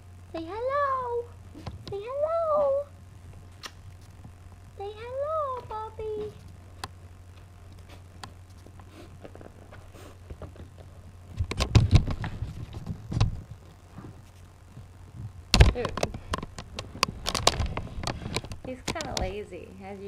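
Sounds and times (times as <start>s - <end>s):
low steady hum: 0.0s - 20.0s
loud thumps: 15.2s - 19.3s
handling clicks and rustling: 15.6s - 19.5s.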